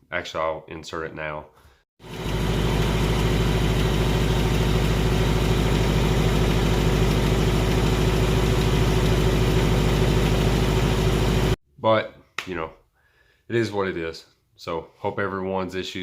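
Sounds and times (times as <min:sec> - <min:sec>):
car engine idling: 0:02.1 - 0:11.6.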